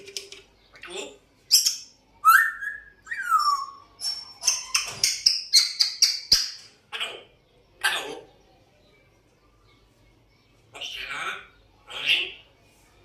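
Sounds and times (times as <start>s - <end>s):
parrot chirping: 0.7s - 8.3s, 10.7s - 12.5s.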